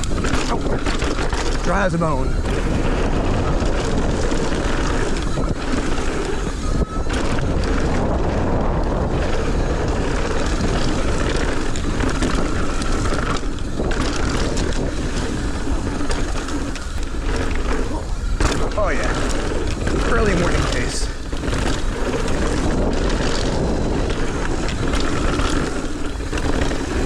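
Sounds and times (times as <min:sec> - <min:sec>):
bike tyres on dirt: 0:00.0 - 0:27.0
wind rushing on microphone: 0:00.0 - 0:27.0.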